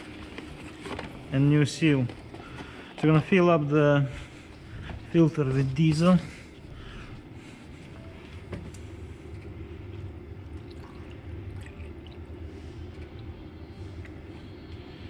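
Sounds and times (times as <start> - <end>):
low background hum: 0.0 - 15.0
liquid trickling: 10.3 - 14.3.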